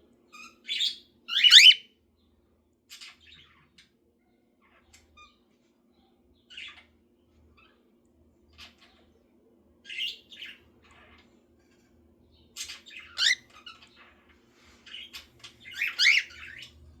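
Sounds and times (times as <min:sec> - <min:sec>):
bird chirping and squawking: 0:00.7 - 0:01.8, 0:12.7 - 0:13.5, 0:15.7 - 0:16.7.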